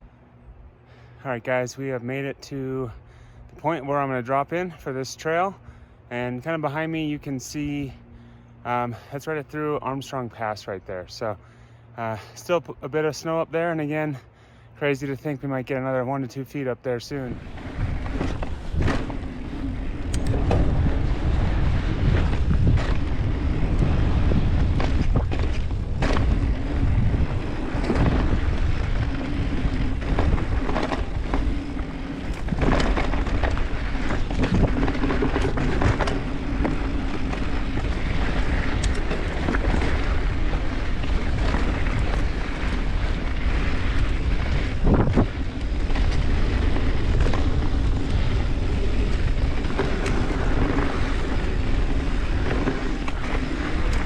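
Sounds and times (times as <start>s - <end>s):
bike rattling over bumps: 17.0s - 54.0s
tyres rolling over dirt: 17.1s - 54.0s
wind buffeting microphone: 17.1s - 54.0s.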